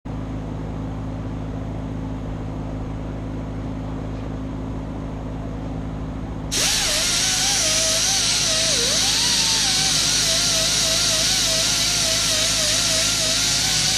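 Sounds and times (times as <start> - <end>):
grinder motor humming: 6.5 - 13.9
grinding wheel on metal chain: 6.6 - 13.9.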